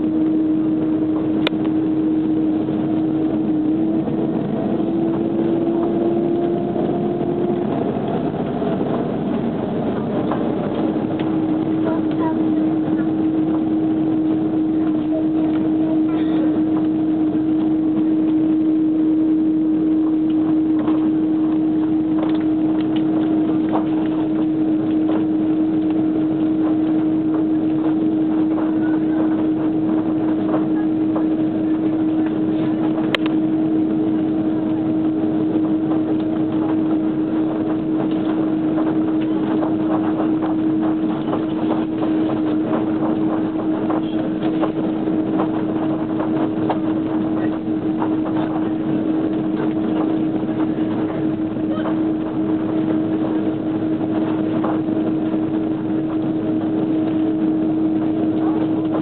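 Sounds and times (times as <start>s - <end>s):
jet engines running: 0.0s - 59.0s.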